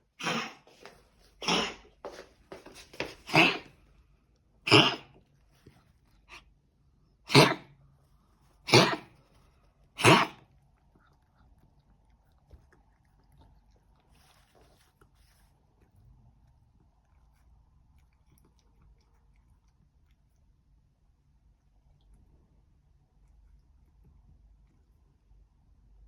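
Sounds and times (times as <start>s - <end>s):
harsh coughing: 1.4s - 1.9s, 3.2s - 3.7s, 4.7s - 5.1s, 7.3s - 7.7s, 8.7s - 9.1s, 10.0s - 10.4s.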